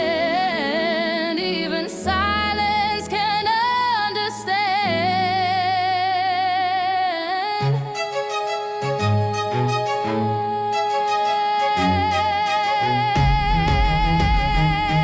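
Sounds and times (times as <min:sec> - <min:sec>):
song with held sung notes: 0:00.0 - 0:15.0
steady bass line: 0:13.1 - 0:15.0.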